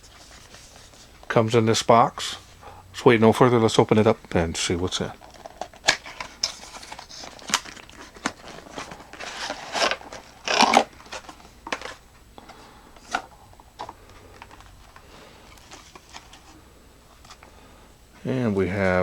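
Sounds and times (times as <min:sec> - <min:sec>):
packaging rustling and crinkling: 0:04.8 - 0:17.5.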